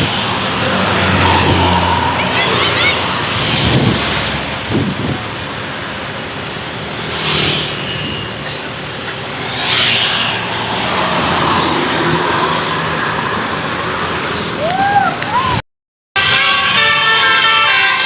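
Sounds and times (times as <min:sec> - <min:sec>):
road traffic hum: 0:00.0 - 0:15.6, 0:16.2 - 0:18.0
vehicles passing: 0:00.0 - 0:15.6.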